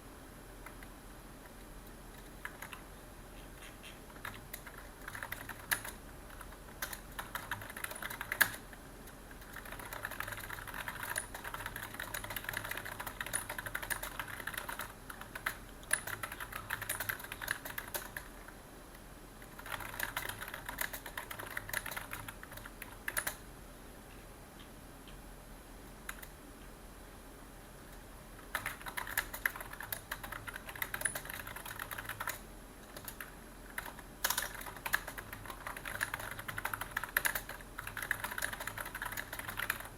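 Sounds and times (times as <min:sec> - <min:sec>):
typing on computer keyboard: 0:02.1 - 0:02.8, 0:04.1 - 0:18.5, 0:19.4 - 0:23.4, 0:26.0 - 0:26.3, 0:28.4 - 0:39.9.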